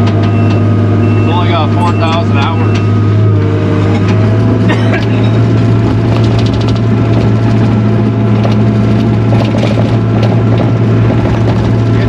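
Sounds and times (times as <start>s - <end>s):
skid steer engine droning: 0.0s - 12.0s
machine clanks and rattles: 3.9s - 12.0s.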